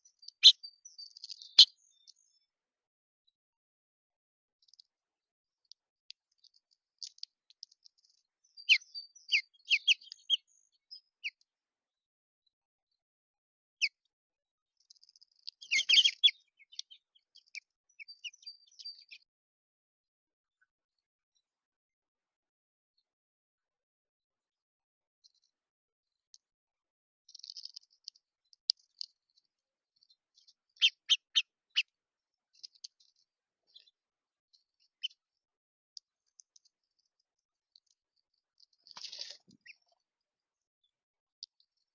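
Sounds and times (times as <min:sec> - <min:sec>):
small songbirds chirping: 0:00.0 - 0:02.6, 0:04.6 - 0:04.9, 0:05.6 - 0:11.5, 0:13.7 - 0:14.1, 0:14.8 - 0:19.4, 0:27.3 - 0:35.4, 0:36.0 - 0:40.2
loud sharp bird chips: 0:15.6 - 0:16.9.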